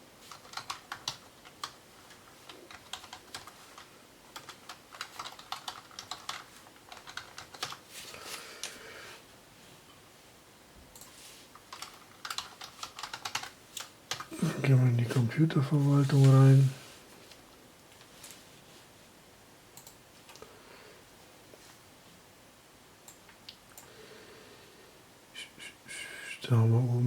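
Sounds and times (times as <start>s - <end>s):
keyboard typing clicks: 19.8s - 20.4s.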